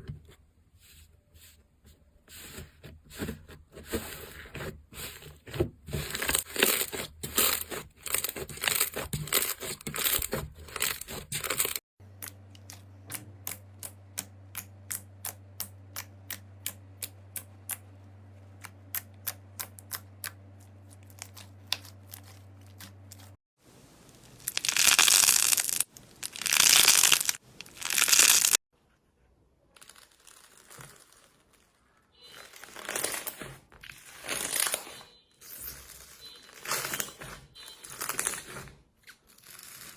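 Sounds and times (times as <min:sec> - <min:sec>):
slime crackling and popping: 0:24.3 - 0:28.6
slime crinkling and tearing: 0:24.3 - 0:28.6.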